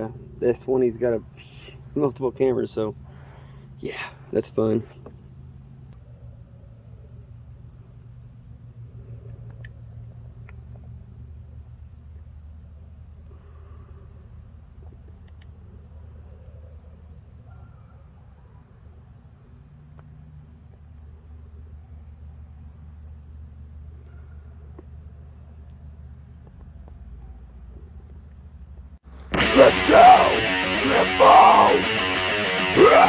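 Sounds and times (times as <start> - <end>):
crickets trilling: 0.0 - 17.5.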